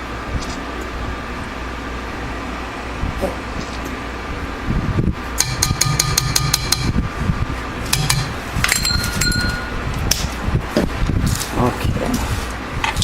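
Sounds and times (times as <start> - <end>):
fan humming: 0.0 - 13.0
utensil clinking against bowl: 7.9 - 9.8.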